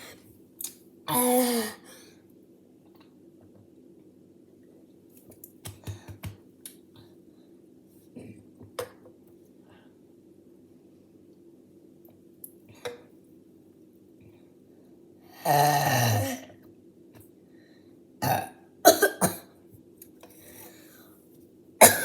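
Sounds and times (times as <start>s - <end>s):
person burping: 1.1s - 1.8s, 15.4s - 16.5s, 18.2s - 19.4s.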